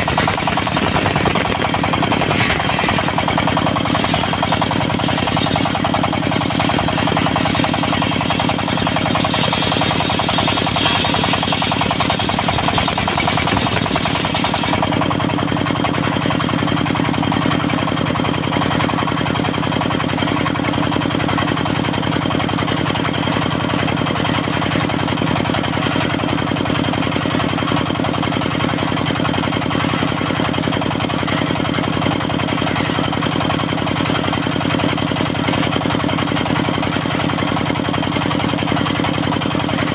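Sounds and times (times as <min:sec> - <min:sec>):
circular saw cutting timber: 0:00.0 - 0:18.1
diesel engine running: 0:00.0 - 0:39.9.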